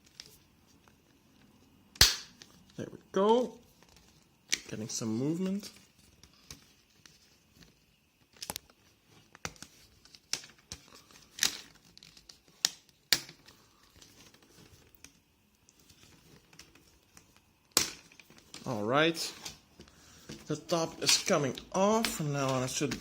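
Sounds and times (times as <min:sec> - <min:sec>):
loud plastic snap: 0:02.0 - 0:02.4.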